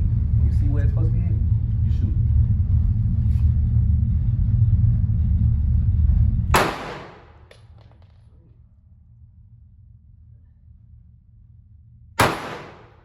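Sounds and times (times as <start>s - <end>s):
low rumble: 0.0s - 13.0s
pistol shot: 6.6s - 7.6s, 12.2s - 13.0s.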